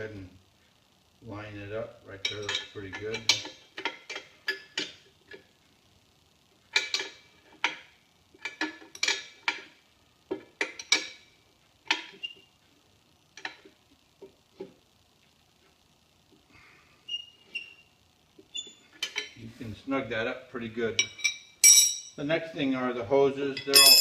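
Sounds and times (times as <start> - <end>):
metal wrench clinking on nut: 21.0 - 22.2, 23.6 - 24.0.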